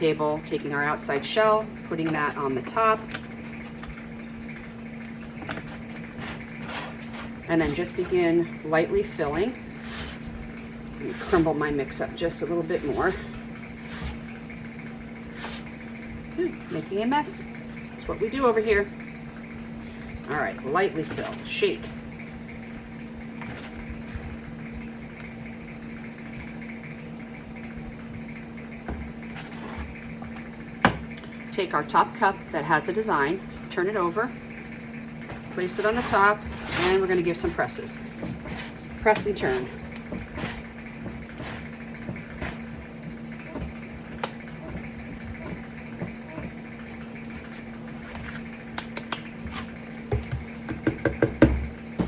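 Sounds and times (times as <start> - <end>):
steady low hum: 0.0 - 52.0
gritty scraping of mold: 35.3 - 42.8
soft taps and rustles: 43.6 - 51.7.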